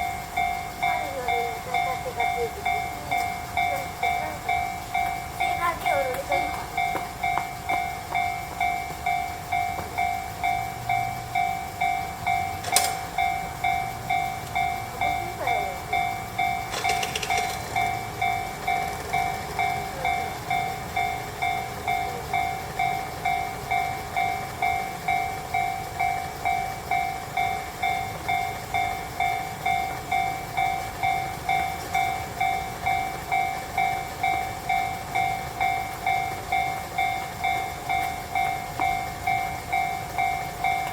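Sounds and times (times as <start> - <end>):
level crossing warning bell: 0.0 - 40.9.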